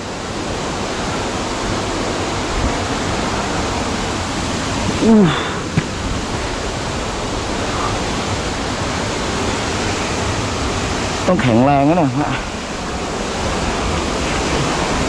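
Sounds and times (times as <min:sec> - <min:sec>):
waterfall rushing: 0:00.0 - 0:15.0
short falling vocal sound: 0:05.0 - 0:06.1.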